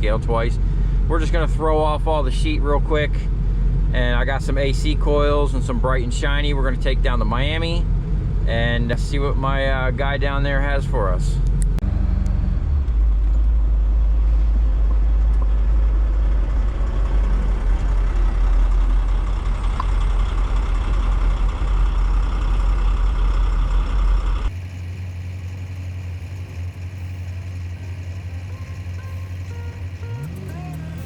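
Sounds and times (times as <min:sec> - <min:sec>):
truck engine and road rumble: 0:00.0 - 0:31.0.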